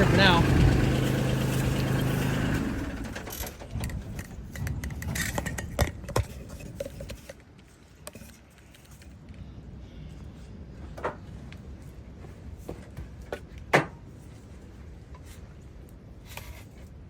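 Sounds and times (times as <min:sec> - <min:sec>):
engine hum: 0:00.0 - 0:07.0.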